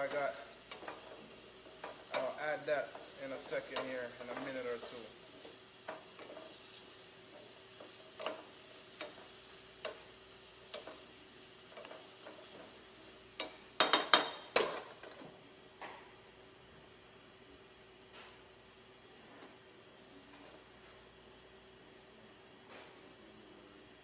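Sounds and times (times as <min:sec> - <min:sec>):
vegetables sizzling in a pan: 0:00.0 - 0:15.7
cookware clattering: 0:13.4 - 0:15.0.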